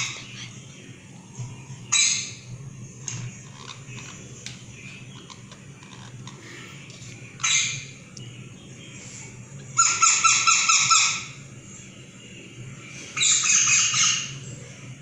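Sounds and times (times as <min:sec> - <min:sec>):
parakeet squawking: 0:00.0 - 0:00.7, 0:07.4 - 0:07.9, 0:09.8 - 0:11.4
steady low hum: 0:00.0 - 0:09.8.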